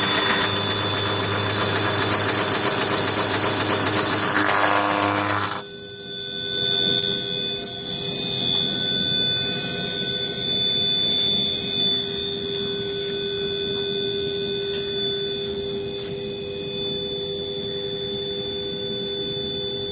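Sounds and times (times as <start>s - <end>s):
sanding machine whine: 0.0s - 5.7s.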